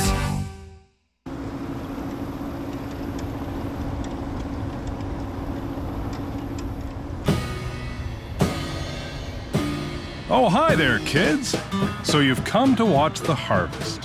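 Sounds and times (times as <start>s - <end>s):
farm machinery engine hum: 1.3s - 14.0s
faint ticks: 2.0s - 7.0s.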